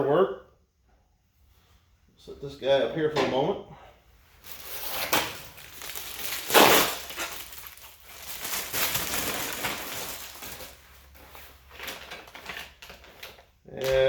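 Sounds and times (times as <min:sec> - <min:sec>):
rustling and crinkling: 0:04.2 - 0:13.6.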